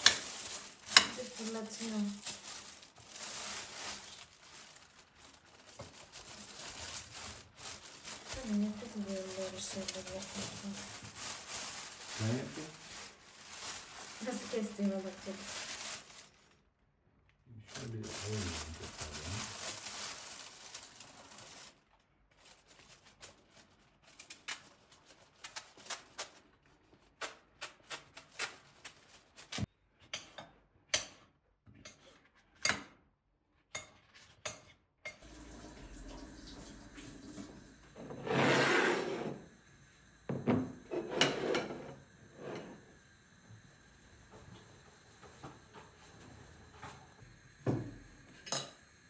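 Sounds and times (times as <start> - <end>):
dishes and utensils clinking: 0.0 - 2.3, 40.3 - 42.8, 48.4 - 48.8.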